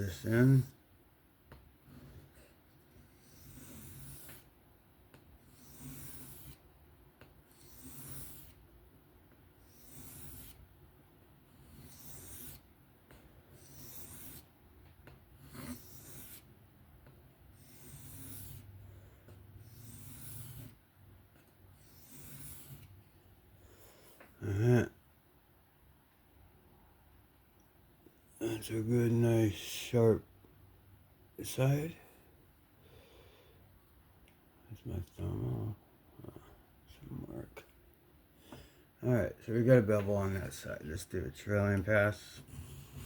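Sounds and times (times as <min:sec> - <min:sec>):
knife blade on whetstone: 0:13.6 - 0:14.4.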